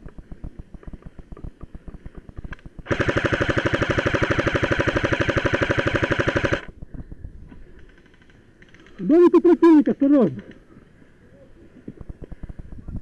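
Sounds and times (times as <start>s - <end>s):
airsoft rifle full-auto burst: 2.8s - 6.7s.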